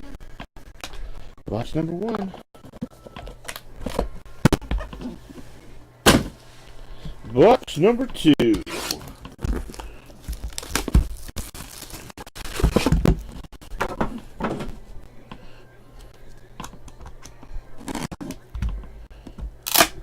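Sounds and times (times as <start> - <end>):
wrapper tearing: 8.7 - 12.9
cardboard rustling and crinkling: 8.7 - 14.8.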